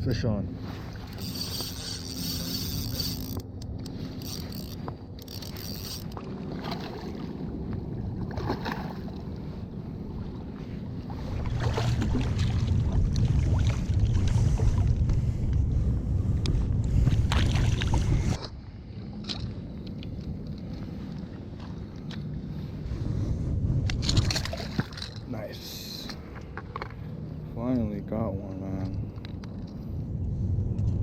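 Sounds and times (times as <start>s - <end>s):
water sloshing and splashing: 0.6s - 15.4s, 16.9s - 23.0s, 23.8s - 25.3s
wind on microphone: 1.0s - 18.5s, 22.4s - 25.0s, 28.8s - 31.0s.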